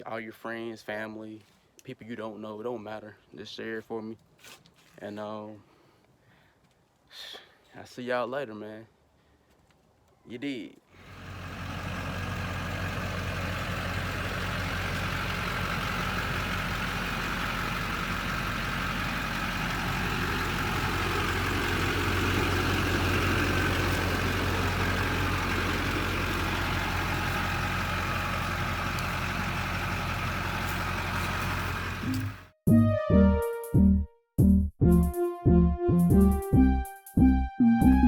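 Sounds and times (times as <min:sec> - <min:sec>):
diesel engine running: 0:11.0 - 0:32.6.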